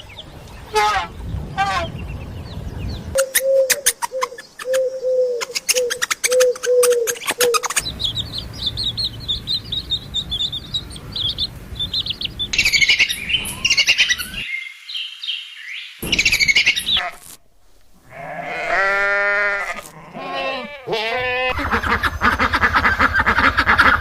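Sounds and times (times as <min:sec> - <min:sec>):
birds chirping high: 0:00.0 - 0:17.4, 0:18.1 - 0:24.0
bird low repeated notes: 0:16.0 - 0:17.2.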